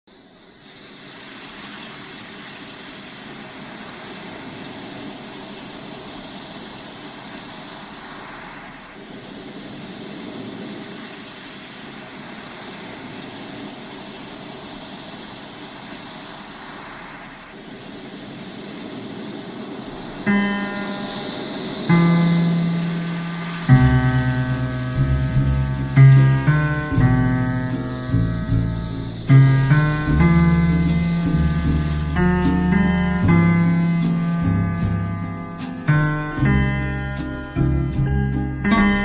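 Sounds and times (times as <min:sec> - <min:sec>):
steady rushing noise: 0:00.0 - 0:39.0
plucked guitar note: 0:23.7 - 0:39.0.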